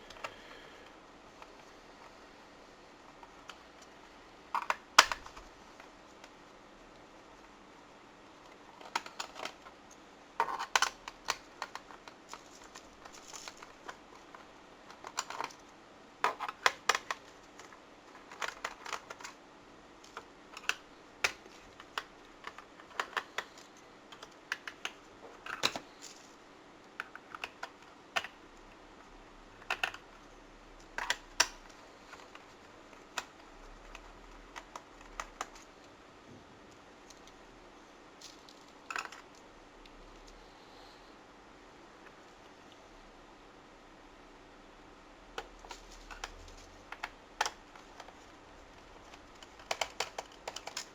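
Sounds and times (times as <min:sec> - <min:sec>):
screwdriver clicking on plastic: 0:10.4 - 0:12.2, 0:16.3 - 0:19.4, 0:20.1 - 0:25.9, 0:29.6 - 0:30.2, 0:49.1 - 0:50.9.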